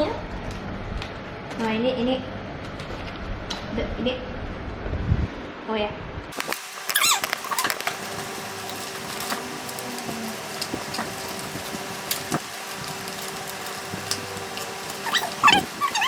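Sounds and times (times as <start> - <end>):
steady electrical hum: 0.0 - 16.0
high squeaky calls: 6.9 - 7.8, 15.0 - 16.0.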